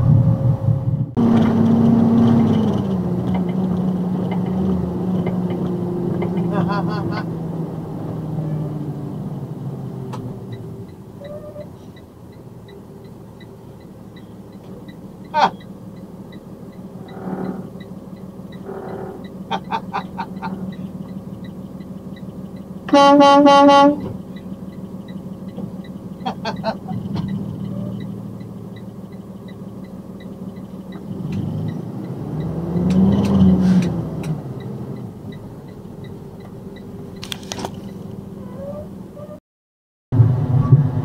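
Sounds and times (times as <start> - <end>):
low rumble: 0.0 - 6.7
truck engine drone: 0.0 - 39.4, 40.1 - 41.0
truck air horn blast: 22.9 - 24.1.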